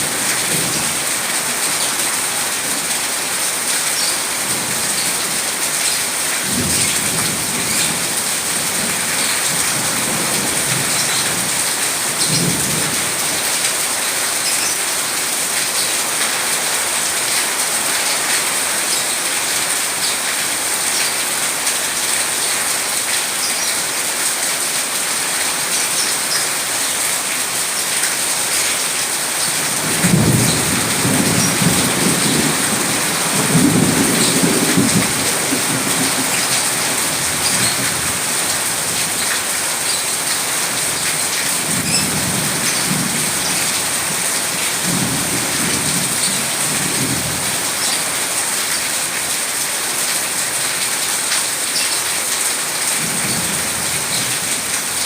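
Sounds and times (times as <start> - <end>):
heavy rain: 0.0 - 55.0
rolling thunder: 29.9 - 36.6.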